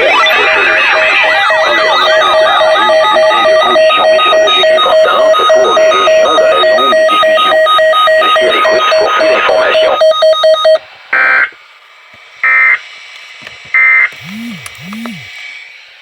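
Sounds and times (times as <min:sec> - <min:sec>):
electronic data bursts: 0:00.0 - 0:10.5, 0:14.2 - 0:15.3
electronic music: 0:14.2 - 0:15.3.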